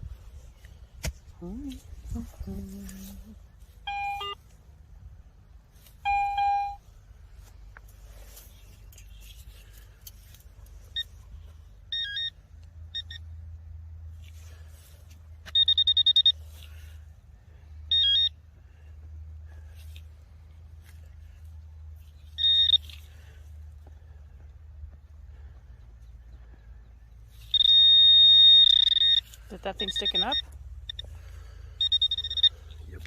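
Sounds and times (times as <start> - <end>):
steady low rumble: 0.0 - 27.6, 28.6 - 33.0
metal detector low tone: 1.4 - 4.5, 6.0 - 6.9, 27.4 - 32.8
metal detector high beeps: 3.8 - 4.4, 6.0 - 6.9, 11.9 - 13.2, 15.5 - 16.8, 17.9 - 18.4, 22.3 - 23.4, 27.4 - 31.2, 31.8 - 32.8.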